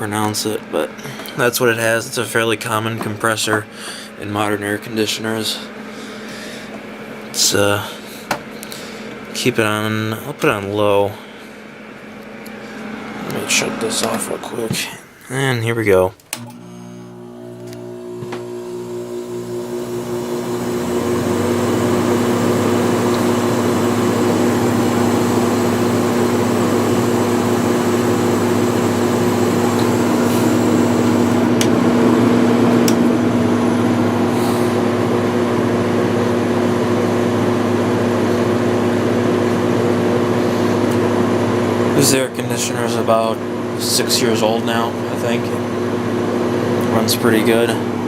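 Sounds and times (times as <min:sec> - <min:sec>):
window air conditioner humming: 0:00.0 - 0:48.0.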